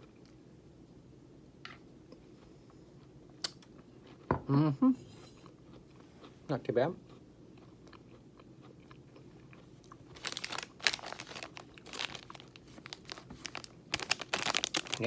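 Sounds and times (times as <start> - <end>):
crunching on snack: 7.1 - 15.0.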